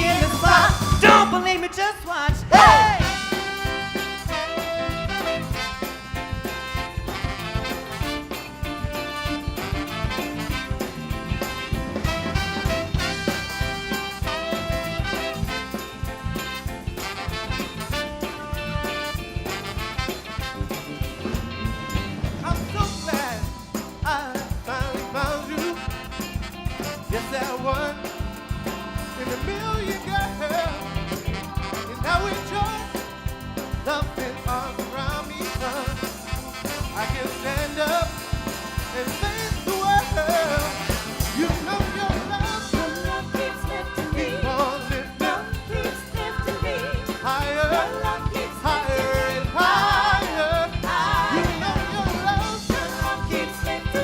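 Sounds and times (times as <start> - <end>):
live band playing: 0.0 - 54.0
steady drum beat: 0.0 - 54.0.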